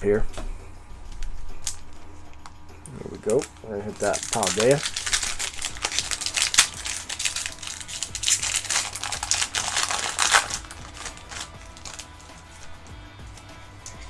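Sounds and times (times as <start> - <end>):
foil wrapper crinkling: 1.0 - 14.0.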